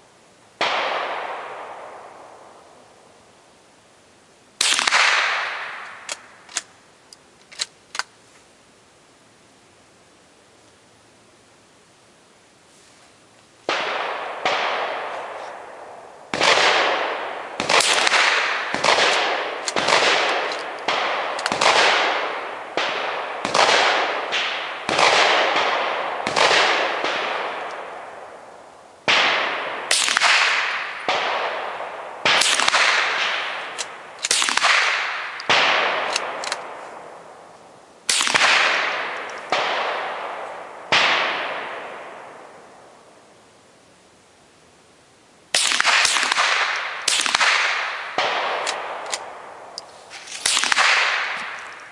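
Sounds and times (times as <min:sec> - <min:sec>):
rifle shots echoing: 0:00.6 - 0:03.1, 0:04.6 - 0:06.7, 0:13.6 - 0:43.2, 0:45.5 - 0:51.9.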